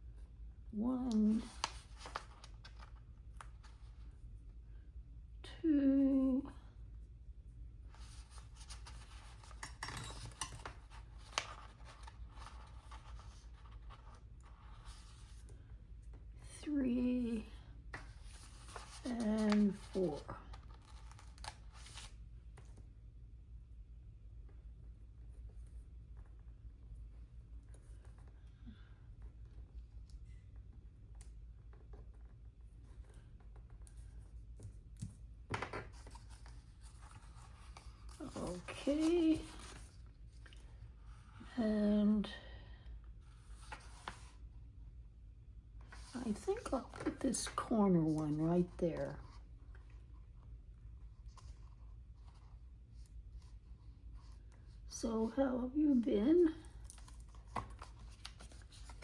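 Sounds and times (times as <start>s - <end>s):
paper and stickers rustling: 0.9s - 4.1s, 7.9s - 16.2s, 17.3s - 22.8s, 31.2s - 41.4s, 45.8s - 50.2s, 51.0s - 59.0s.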